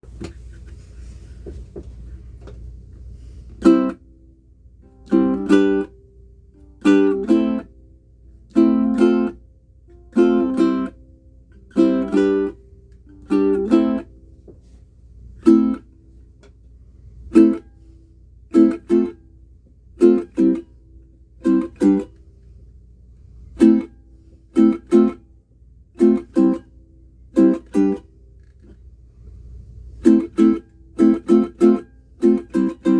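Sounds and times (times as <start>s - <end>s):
ukulele chords strummed: 3.2s - 16.1s, 17.3s - 22.2s, 23.4s - 28.7s, 29.8s - 32.9s.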